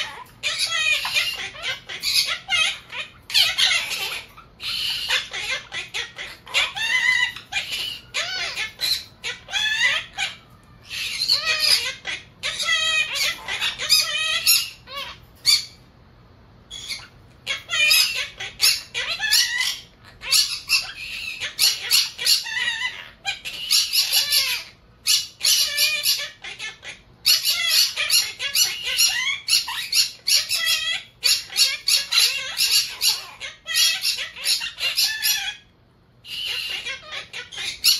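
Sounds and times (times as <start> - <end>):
parakeets chattering: 0.0 - 37.9.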